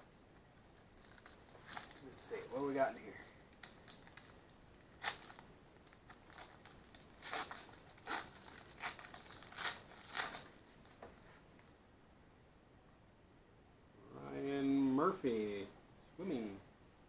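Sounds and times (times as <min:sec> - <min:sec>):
card wrapper crinkling: 0:00.0 - 0:11.7.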